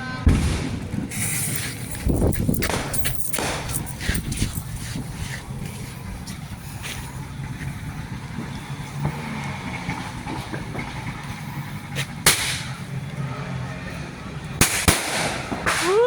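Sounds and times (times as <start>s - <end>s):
low rumble: 0.0s - 15.8s
firework bang: 0.2s - 1.9s, 2.6s - 4.0s, 12.2s - 12.8s, 14.6s - 16.0s.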